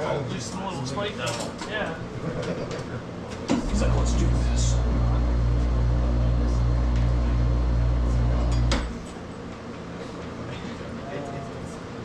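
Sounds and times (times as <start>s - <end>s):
electric motor humming: 3.6s - 9.1s.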